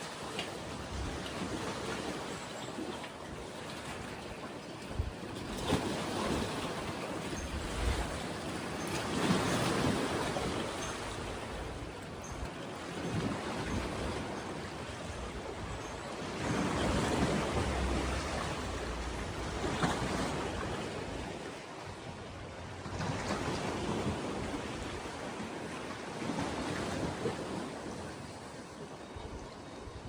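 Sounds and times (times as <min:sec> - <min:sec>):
water washing against shore: 0:00.0 - 0:22.0
wind on microphone: 0:03.6 - 0:25.5.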